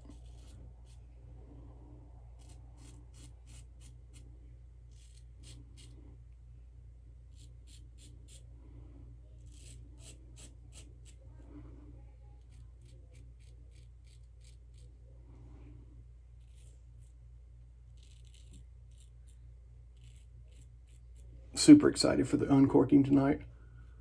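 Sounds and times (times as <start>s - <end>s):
razor scraping through stubble: 0.0s - 1.0s, 2.4s - 4.2s, 4.9s - 6.0s, 7.3s - 8.4s, 9.4s - 11.2s, 12.4s - 14.9s, 16.4s - 17.2s, 17.9s - 21.3s
faint steady hum: 0.0s - 24.0s.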